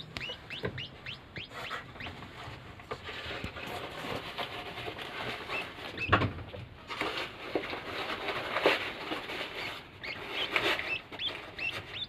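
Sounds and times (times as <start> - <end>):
baby bird cheeping: 0.0 - 2.2, 5.4 - 6.2, 9.5 - 12.0.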